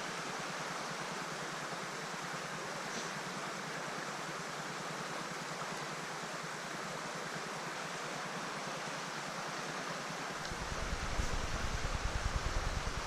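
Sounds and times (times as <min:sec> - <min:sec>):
stream water rushing: 0:00.0 - 0:13.0
low rumble: 0:10.5 - 0:13.0.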